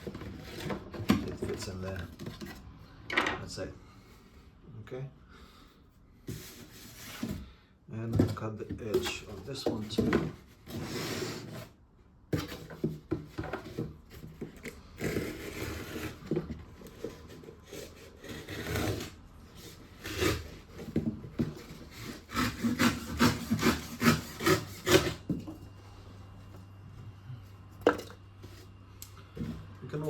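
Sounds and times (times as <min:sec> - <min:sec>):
knife sawing through cardboard: 0:14.1 - 0:25.3.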